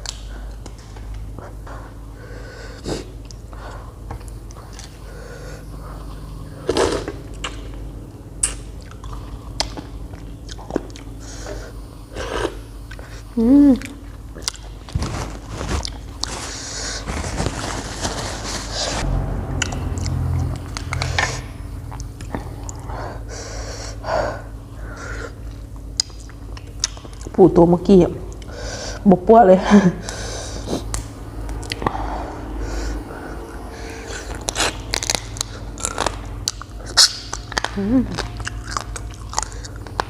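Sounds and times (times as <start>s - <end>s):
close chewing and crunching: 2.7s - 19.0s, 25.2s - 27.4s, 33.9s - 40.0s.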